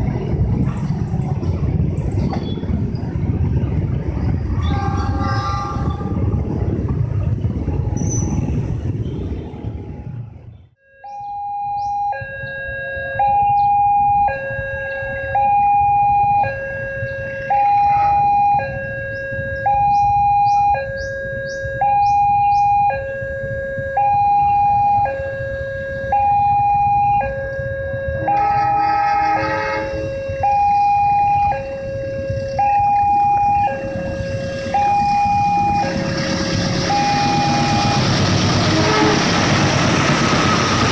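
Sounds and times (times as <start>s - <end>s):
low rumble: 0.0s - 10.7s, 27.5s - 40.9s
level crossing two-tone alarm: 10.9s - 16.6s, 30.0s - 38.2s.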